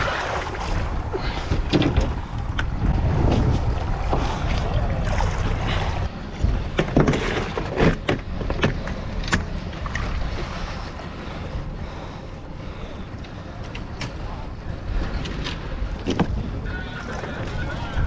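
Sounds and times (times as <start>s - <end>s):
knocks and splashes on hull: 0.0s - 10.6s, 14.9s - 18.0s
water washing: 0.0s - 18.0s
wind buffeting microphone: 0.0s - 18.0s.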